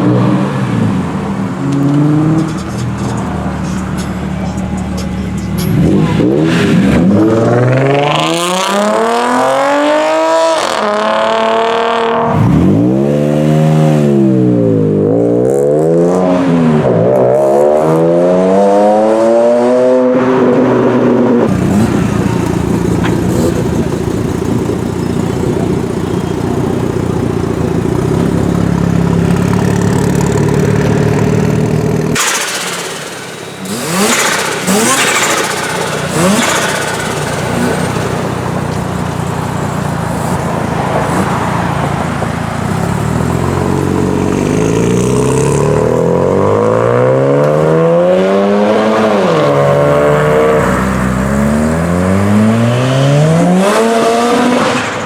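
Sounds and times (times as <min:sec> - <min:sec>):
car accelerating hard: 0:00.0 - 0:55.0
car engine idling: 0:00.6 - 0:07.7, 0:21.5 - 0:46.3.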